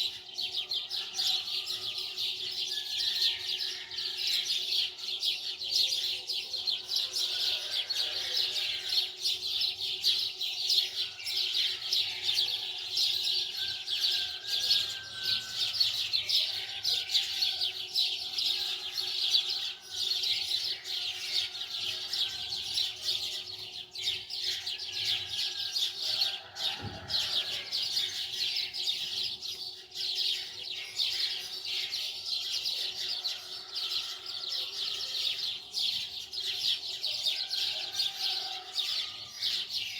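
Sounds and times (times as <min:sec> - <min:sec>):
small birds chirping: 0:00.0 - 0:03.2.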